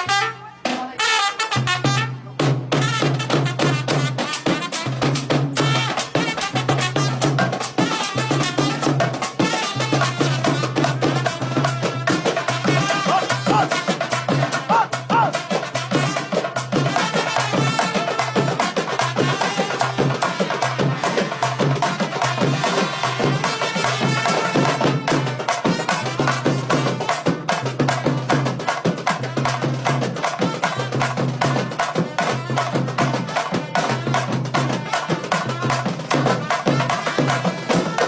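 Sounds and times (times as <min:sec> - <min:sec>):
fast dense drumming: 0:10.6 - 0:15.5.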